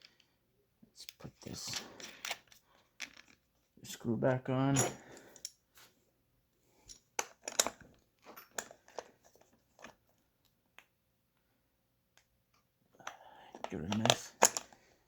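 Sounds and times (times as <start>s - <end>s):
metal parts clicking and scraping: 7.2s - 9.1s, 13.5s - 14.8s.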